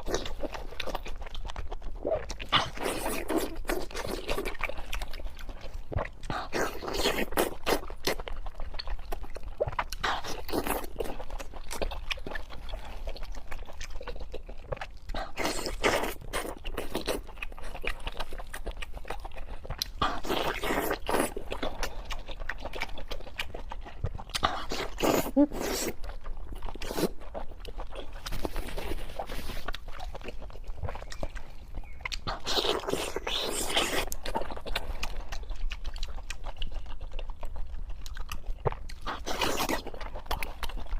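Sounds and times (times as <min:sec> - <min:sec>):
person chewing crunchy food: 0:00.0 - 0:40.9.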